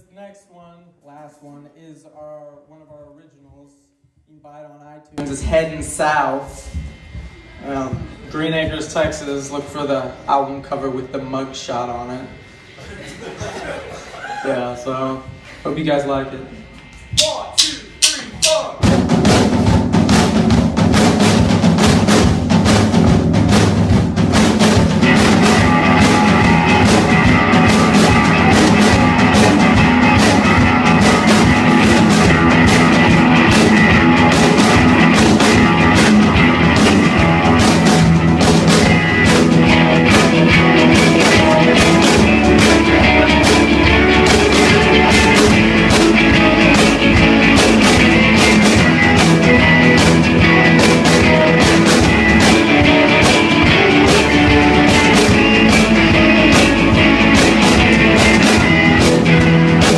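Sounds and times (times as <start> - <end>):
live rock band playing: 16.9 - 59.9.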